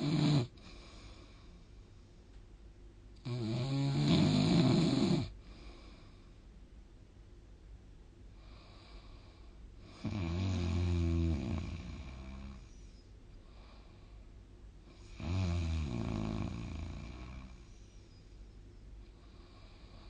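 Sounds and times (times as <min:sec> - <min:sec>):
person snoring: 0:00.0 - 0:00.5, 0:03.2 - 0:05.3, 0:09.9 - 0:12.7, 0:15.1 - 0:17.7
faint breath: 0:00.5 - 0:02.4, 0:05.4 - 0:06.6, 0:08.3 - 0:10.1, 0:12.6 - 0:15.2, 0:17.4 - 0:20.0.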